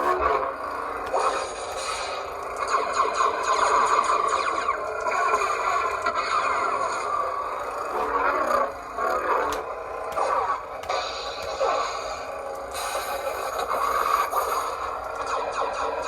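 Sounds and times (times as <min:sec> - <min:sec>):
lightsaber hum: 0:00.0 - 0:16.0
lightsaber swing sounds: 0:07.9 - 0:12.2.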